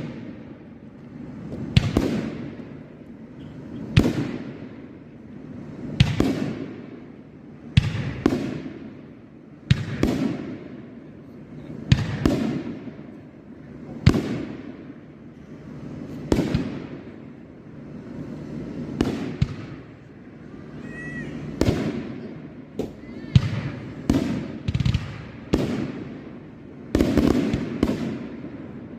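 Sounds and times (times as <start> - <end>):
firework bangs with echo: 0.0 - 0.6, 1.4 - 5.0, 5.9 - 11.0, 11.8 - 13.2, 13.9 - 15.1, 16.0 - 17.3, 18.8 - 20.0, 20.8 - 28.9.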